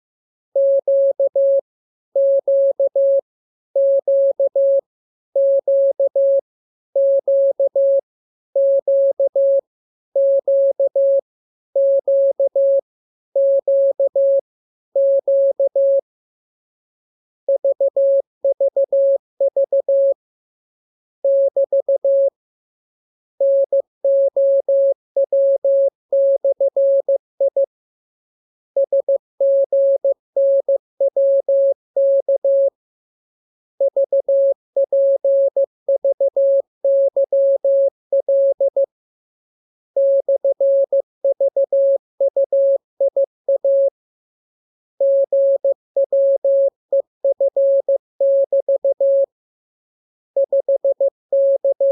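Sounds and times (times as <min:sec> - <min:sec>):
morse code beeps: 0:50.4 - 0:51.9.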